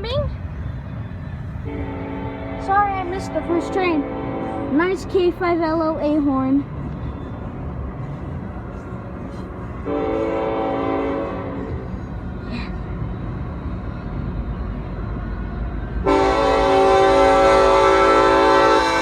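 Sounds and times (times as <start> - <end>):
locomotive air horn chord: 1.6 - 4.9, 9.8 - 12.0, 16.0 - 19.0.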